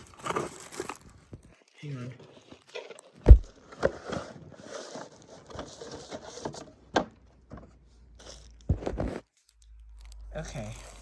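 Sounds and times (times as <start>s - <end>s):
cardboard box rustling: 0.0s - 1.3s, 2.2s - 9.3s.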